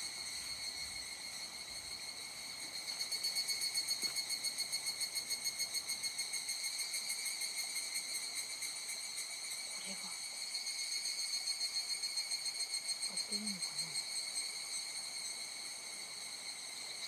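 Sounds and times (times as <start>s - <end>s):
insect buzzing call: 0.0s - 17.0s.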